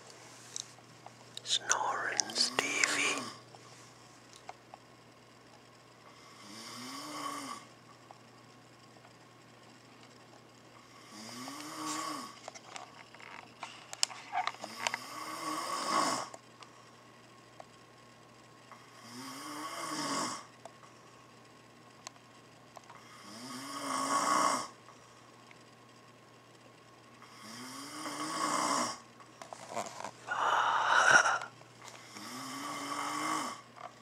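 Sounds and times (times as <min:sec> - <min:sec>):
faint steady hum: 0:00.0 - 0:34.0
man snoring: 0:01.6 - 0:03.4, 0:06.2 - 0:07.7, 0:11.0 - 0:12.4, 0:14.7 - 0:16.3, 0:18.9 - 0:20.5, 0:23.0 - 0:24.8, 0:27.3 - 0:29.0, 0:30.3 - 0:33.7.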